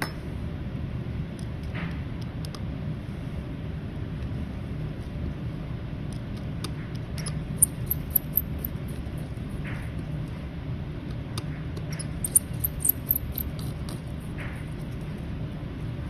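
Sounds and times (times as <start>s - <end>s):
steady low hum: 0.0s - 16.0s
small tools clicking and tapping: 7.2s - 8.8s, 11.8s - 14.0s.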